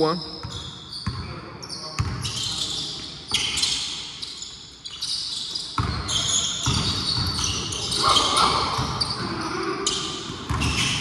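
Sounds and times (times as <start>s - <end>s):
sneakers squeaking: 0.0s - 11.0s
basketball bouncing on court: 0.4s - 2.6s, 5.4s - 11.0s.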